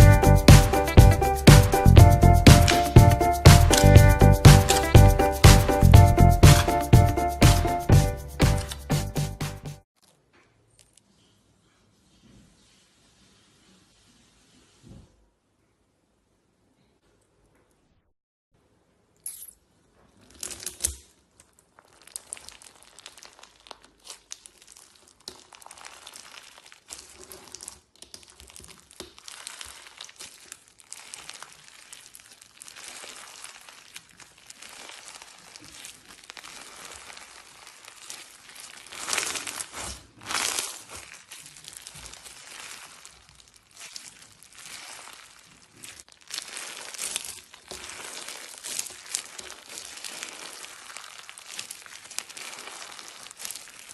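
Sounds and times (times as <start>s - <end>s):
slime crackling and popping: 2.4s - 7.6s, 20.2s - 53.9s.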